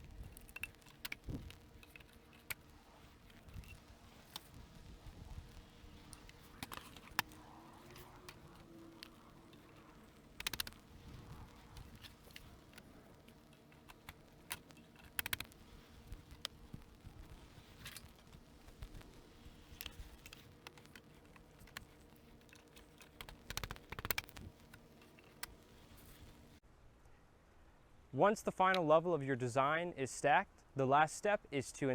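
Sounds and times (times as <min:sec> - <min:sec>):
plastic clicks and knocks: 0:00.0 - 0:26.5.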